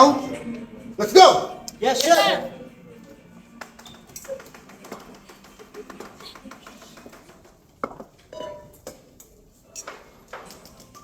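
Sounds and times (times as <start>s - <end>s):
dishes and utensils clinking: 3.6s - 11.0s.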